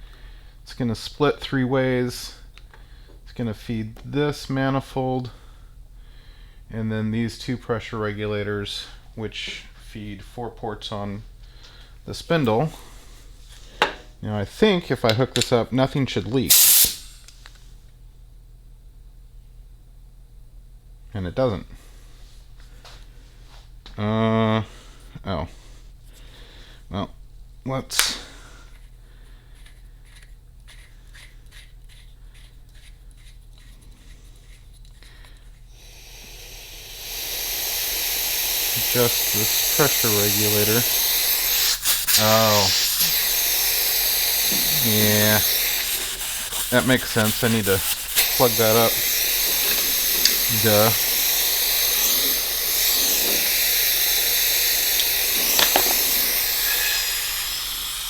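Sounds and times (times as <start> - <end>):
compressed air hissing: 16.5 - 17.6, 28.0 - 28.7, 34.0 - 58.0
faint ticking: 35.9 - 58.0.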